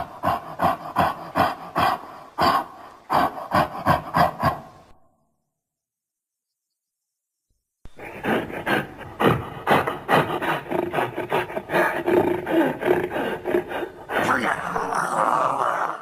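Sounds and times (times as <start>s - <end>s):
held growl: 8.2s - 16.0s
monster roar with grunting pulses: 10.8s - 16.0s.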